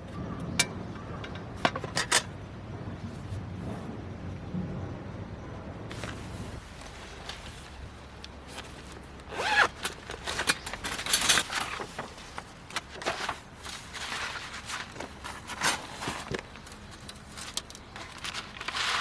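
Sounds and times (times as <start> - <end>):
zipper rasping: 9.3 - 9.9.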